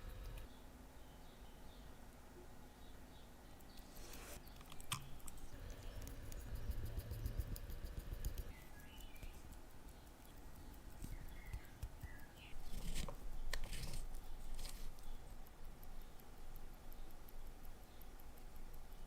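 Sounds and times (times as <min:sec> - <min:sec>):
small tools clicking and tapping: 0:04.5 - 0:19.0.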